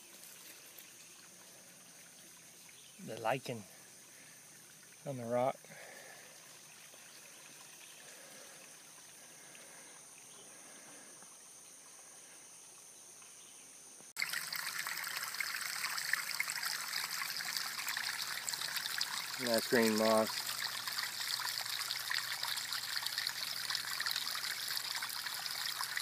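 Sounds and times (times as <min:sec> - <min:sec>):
creek trickling over rocks: 0:00.0 - 0:13.3, 0:14.1 - 0:26.0
high insect hum: 0:00.0 - 0:26.0.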